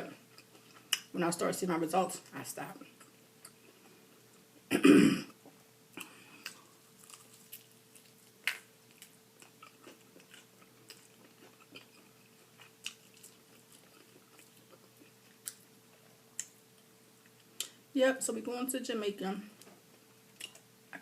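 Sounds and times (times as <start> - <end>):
faint steady hum: 0.0 - 21.0
chewing with crisp bites: 5.9 - 15.7, 19.9 - 21.0.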